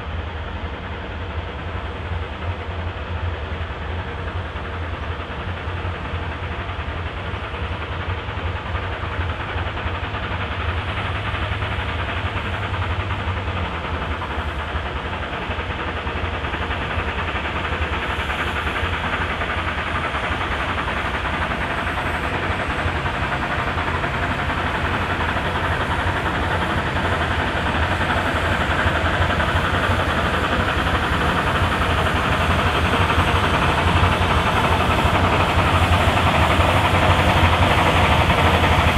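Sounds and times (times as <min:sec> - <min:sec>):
steam train rumble and hiss: 0:00.0 - 0:38.9.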